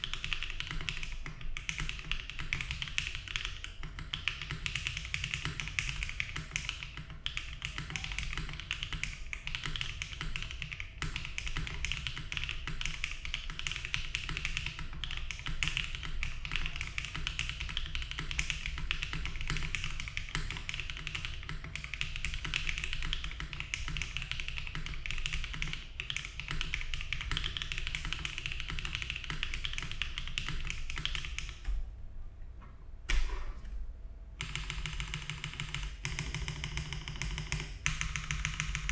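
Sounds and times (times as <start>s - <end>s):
mechanical keyboard typing: 0.0s - 31.7s, 34.4s - 38.9s.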